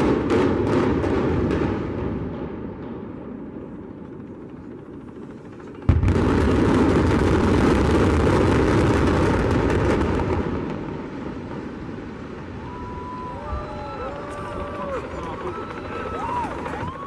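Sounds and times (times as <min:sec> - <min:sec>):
demolition blast: 0:00.0 - 0:03.8, 0:05.8 - 0:12.7.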